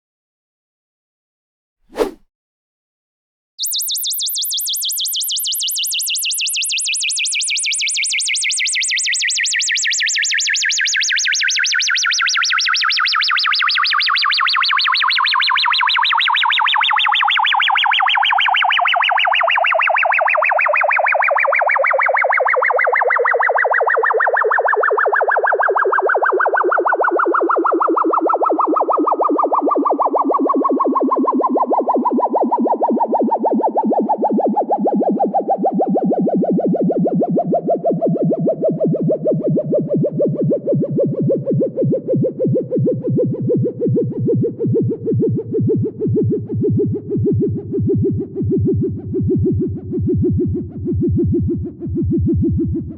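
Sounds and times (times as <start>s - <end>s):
warbling electronic tone sliding down: 1.9s - 2.2s.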